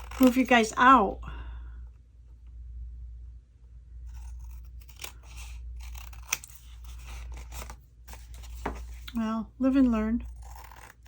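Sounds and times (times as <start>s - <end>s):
scissors snipping paper: 4.1s - 9.2s, 10.2s - 11.0s.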